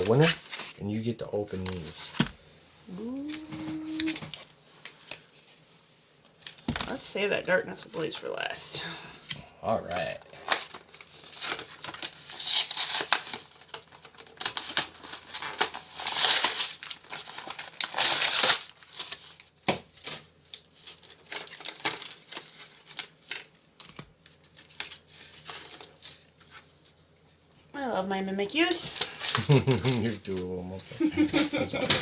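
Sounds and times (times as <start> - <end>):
foil pack crinkling and tearing: 9.9 - 27.0, 28.8 - 32.0.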